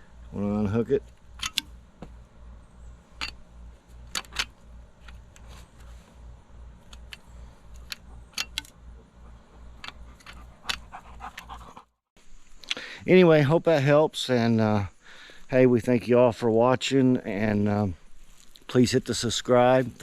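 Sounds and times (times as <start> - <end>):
low pulsing hum: 0.0 - 11.8
metallic clicks of hose fittings: 1.1 - 1.8, 3.1 - 5.9, 6.6 - 11.5.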